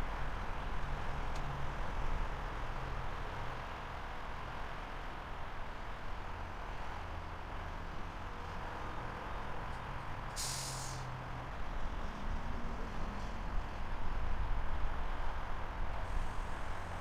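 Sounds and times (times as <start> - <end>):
air brake hiss: 10.3 - 11.1.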